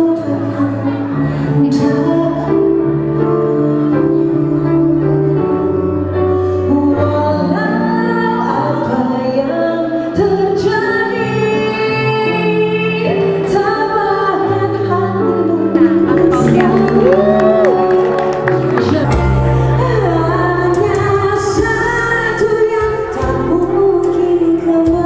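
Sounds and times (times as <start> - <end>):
woman singing: 10.6 - 19.2
held accompaniment chords: 15.7 - 20.3.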